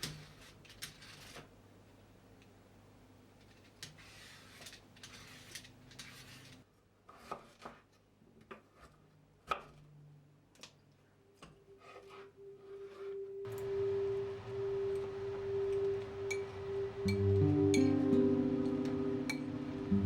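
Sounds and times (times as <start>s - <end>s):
steady tone: 12.4s - 20.0s.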